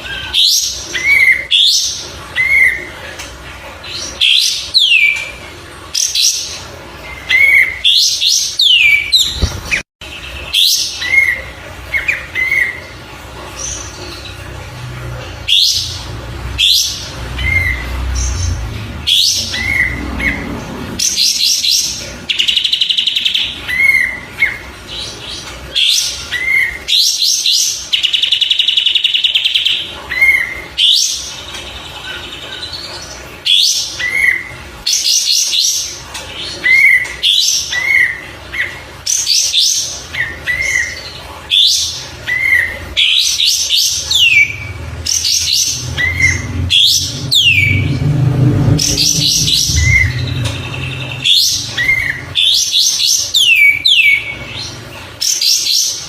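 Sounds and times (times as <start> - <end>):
low rumble: 15.9 - 21.2, 44.6 - 52.4
songbird chirping and whistling: 44.0 - 54.4.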